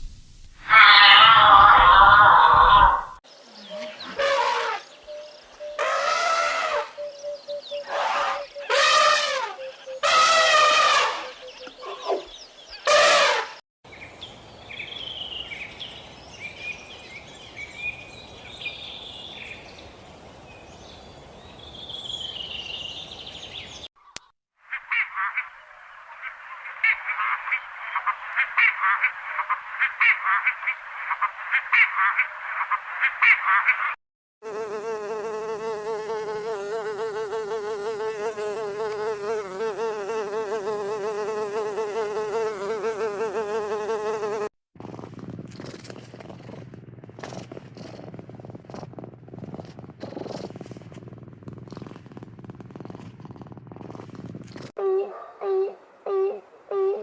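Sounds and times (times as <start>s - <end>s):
loud animal calls: 0.6s - 3.2s
insect buzz: 34.4s - 44.6s.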